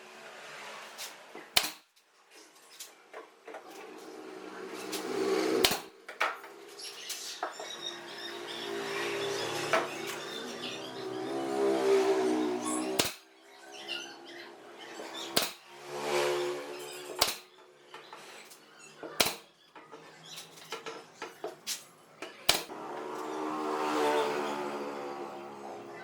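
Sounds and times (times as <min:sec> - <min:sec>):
sharp knocks: 0:15.3 - 0:15.6.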